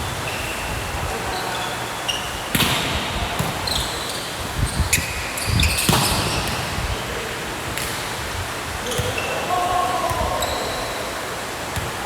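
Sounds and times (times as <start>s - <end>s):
shoes squeaking on court: 0.0s - 2.7s, 3.4s - 6.7s, 8.8s - 9.4s, 10.4s - 11.0s.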